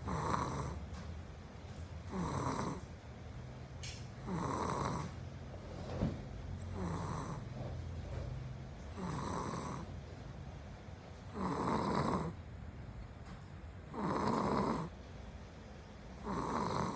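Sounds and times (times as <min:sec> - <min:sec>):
child snoring: 0:00.0 - 0:00.8, 0:02.0 - 0:02.9, 0:04.2 - 0:05.2, 0:06.6 - 0:07.6, 0:08.9 - 0:09.9, 0:11.3 - 0:12.4, 0:13.9 - 0:14.9, 0:16.2 - 0:16.9.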